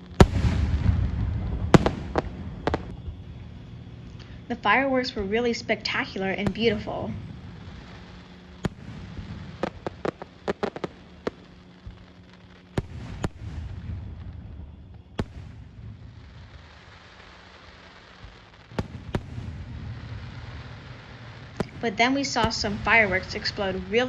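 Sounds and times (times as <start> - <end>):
fireworks shells bursting: 0.0 - 3.1
low rumble of booms: 0.0 - 16.8, 18.2 - 24.0.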